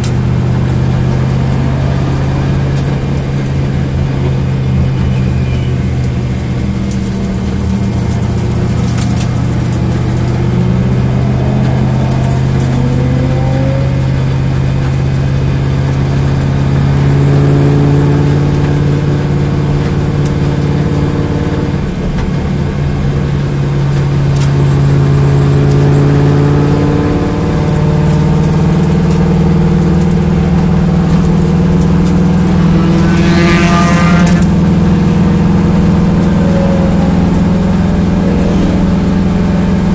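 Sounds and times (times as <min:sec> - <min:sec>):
car engine revving: 0:06.0 - 0:22.0, 0:24.2 - 0:39.9.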